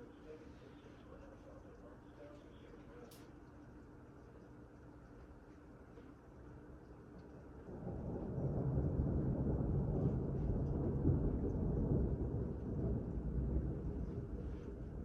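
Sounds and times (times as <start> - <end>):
thunder rumbling: 7.6 - 15.0.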